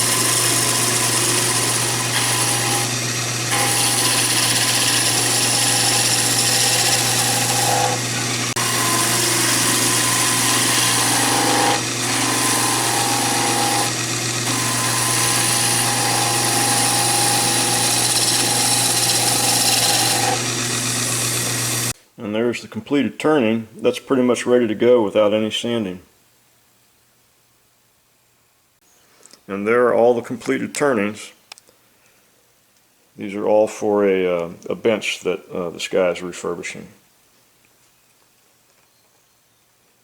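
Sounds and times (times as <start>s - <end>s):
lathe motor humming: 0.0s - 22.0s
tool cutting spinning wood: 0.0s - 22.0s.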